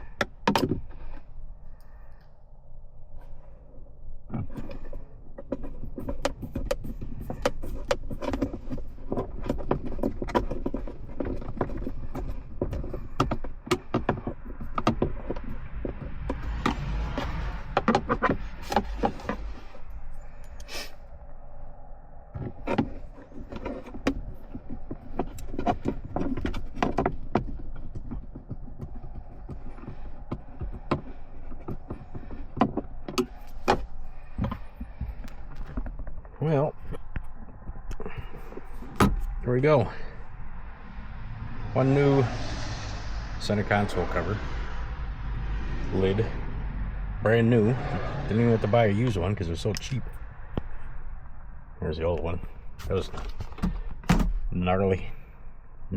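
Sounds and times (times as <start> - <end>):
plastic scraping: 4.3 - 21.2, 22.3 - 41.8
low rumble: 14.2 - 55.9.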